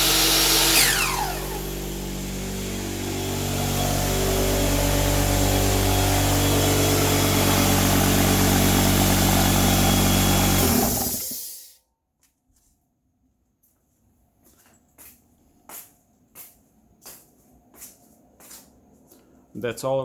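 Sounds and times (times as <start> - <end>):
air compressor and saw motor hum: 0.0 - 11.8.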